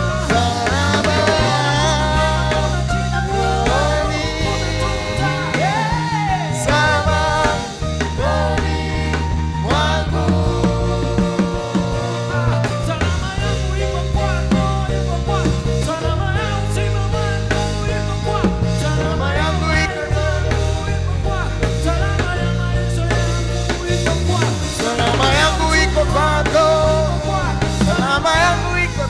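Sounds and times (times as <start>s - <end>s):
live gospel band music: 0.0s - 29.0s.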